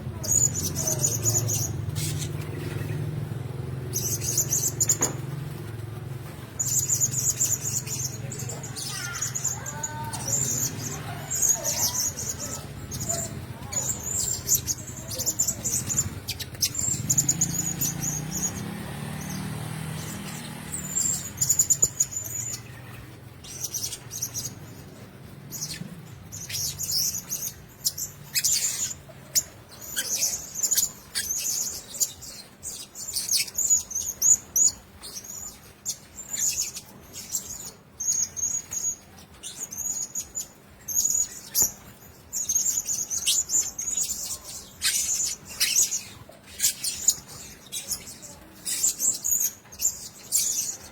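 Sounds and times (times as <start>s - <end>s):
parrots chirping high squeaky calls: 0.0s - 5.8s, 6.6s - 50.9s.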